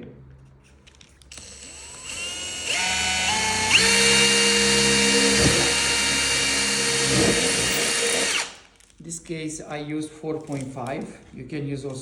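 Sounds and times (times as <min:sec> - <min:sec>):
electric drill motor whining: 0:01.3 - 0:08.6.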